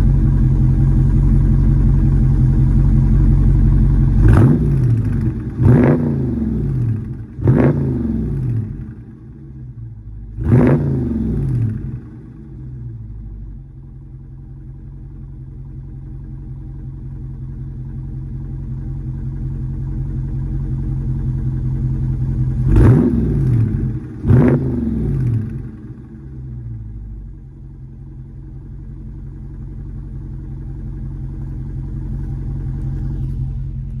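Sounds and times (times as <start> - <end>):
car engine idling: 0.0 - 34.0
engine revving: 4.1 - 9.2, 10.4 - 12.4, 22.5 - 26.2.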